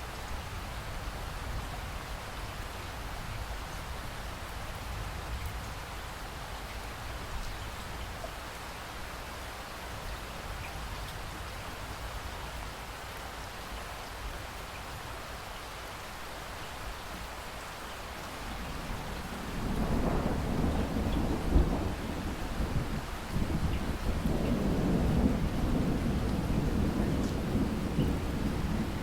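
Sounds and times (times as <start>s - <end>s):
steady rain falling: 0.0s - 29.0s
thunder rumbling and cracking: 18.7s - 29.0s.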